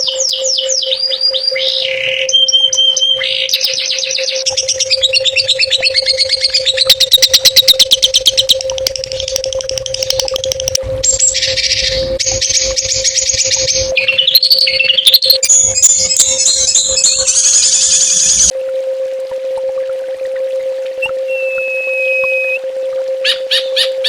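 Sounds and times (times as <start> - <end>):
songbird chattering trills: 0.0 - 18.5
steady low tone: 0.0 - 24.0.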